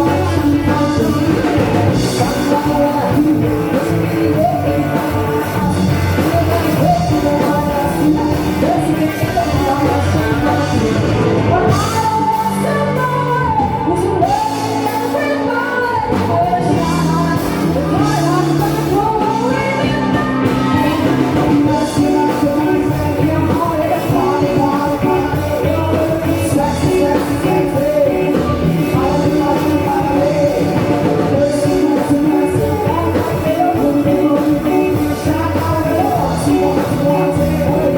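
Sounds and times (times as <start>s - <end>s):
bending guitar lead line: 0.0s - 37.9s
rock band jamming: 0.0s - 37.9s.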